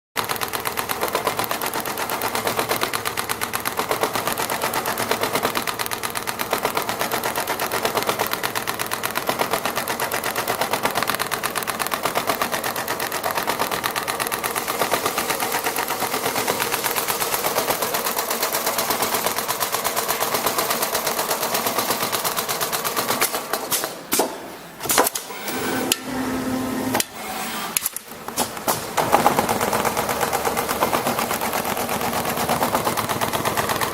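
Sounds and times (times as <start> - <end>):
sewing machine needle clatter: 0.2 - 23.9, 27.8 - 33.9.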